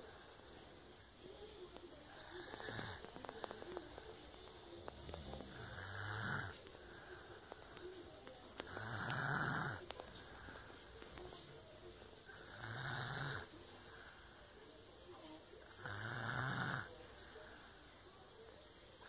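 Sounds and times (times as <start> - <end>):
child snoring: 2.2 - 3.7, 5.1 - 6.6, 8.7 - 9.8, 12.3 - 13.5, 15.2 - 16.9.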